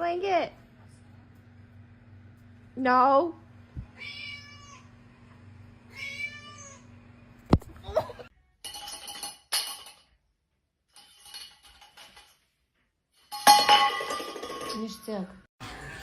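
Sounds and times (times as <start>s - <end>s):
cat meowing: 3.8s - 4.9s, 5.9s - 6.9s.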